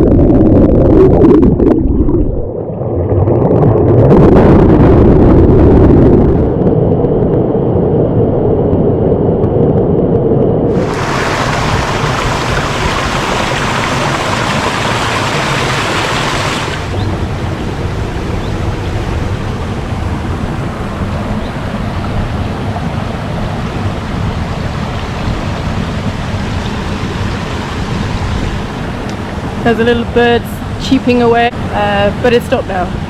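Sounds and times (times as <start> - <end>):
stream flowing over rocks: 10.7 - 17.2.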